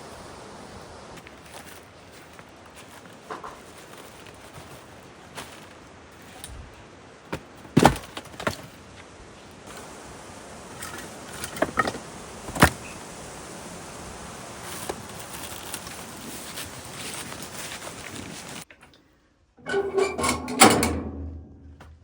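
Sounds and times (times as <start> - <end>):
firewood knocking together: 7.3 - 8.7.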